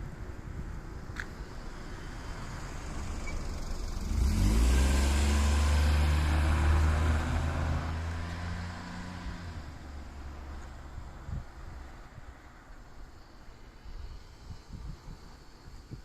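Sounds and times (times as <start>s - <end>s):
vehicle engine passing by: 2.2s - 11.4s.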